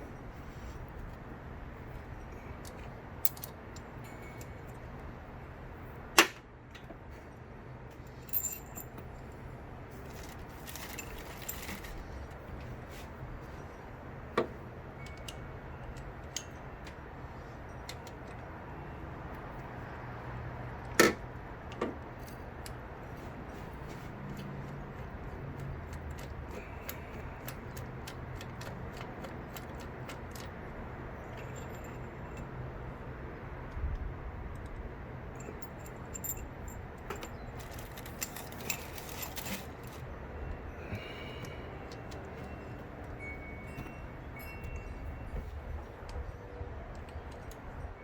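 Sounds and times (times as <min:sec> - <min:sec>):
metal tools clinking: 0:02.6 - 0:04.9, 0:07.9 - 0:12.2, 0:31.2 - 0:32.6, 0:35.4 - 0:40.1.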